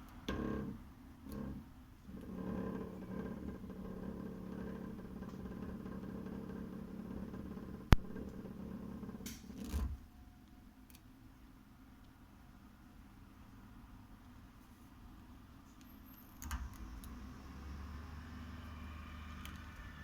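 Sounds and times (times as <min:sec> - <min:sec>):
radiator humming drone: 0:00.3 - 0:10.0.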